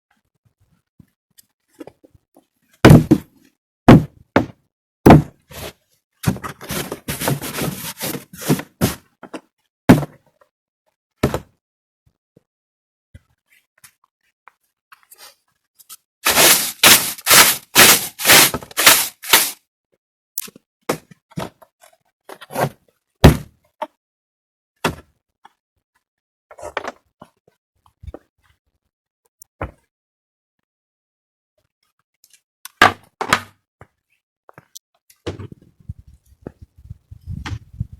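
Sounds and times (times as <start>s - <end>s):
knocks or thuds: 2.9s - 3.2s, 3.9s - 4.5s, 5.1s - 5.3s, 23.2s - 23.5s.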